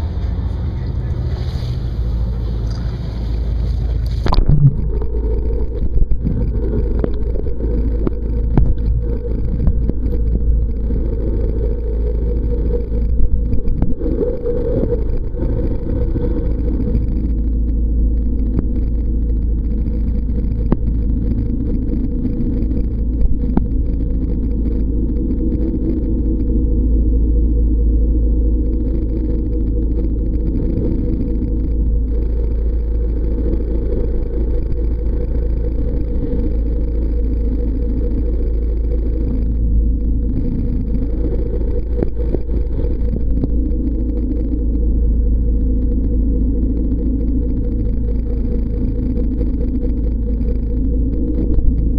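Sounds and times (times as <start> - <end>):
muffled underwater rumble: 0.0 - 51.9
sharp clicks and knocks: 4.0 - 26.5.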